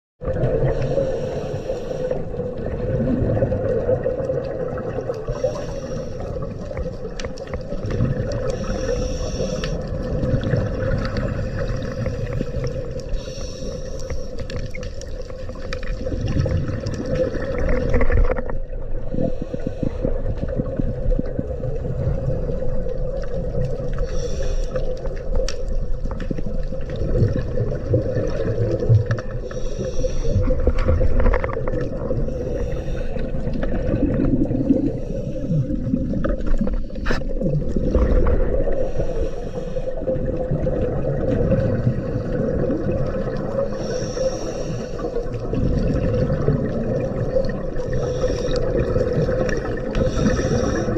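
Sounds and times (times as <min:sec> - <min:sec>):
hissing exhaled bubbles: 0:00.2 - 0:50.9
low underwater hum: 0:00.2 - 0:50.9
diver breathing through regulator: 0:00.6 - 0:02.5, 0:05.2 - 0:06.9, 0:08.4 - 0:10.2, 0:11.0 - 0:14.6, 0:19.0 - 0:20.5, 0:24.0 - 0:25.1, 0:29.2 - 0:30.9, 0:32.0 - 0:37.4, 0:38.6 - 0:40.3, 0:43.6 - 0:45.5, 0:47.8 - 0:50.9.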